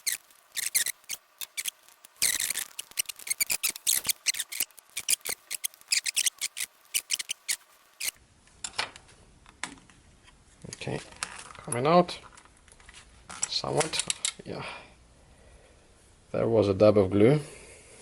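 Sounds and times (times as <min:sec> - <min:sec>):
tool scraping and clicking: 0:00.0 - 0:08.2.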